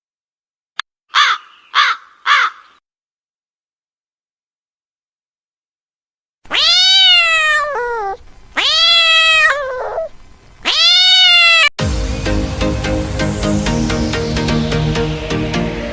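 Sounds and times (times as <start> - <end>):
cat meowing: 6.5 - 11.8
electronic dance music: 11.8 - 15.9.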